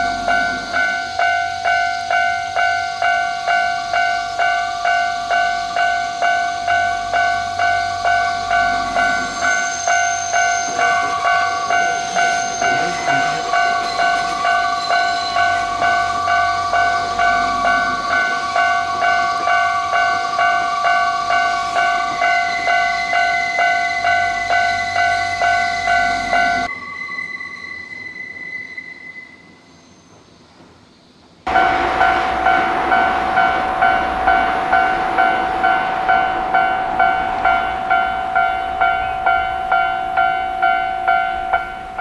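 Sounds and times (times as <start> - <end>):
level crossing warning bell: 0.0 - 26.7, 31.5 - 42.0
steady high whine: 0.0 - 30.2, 31.5 - 42.0
train running past: 0.0 - 42.0.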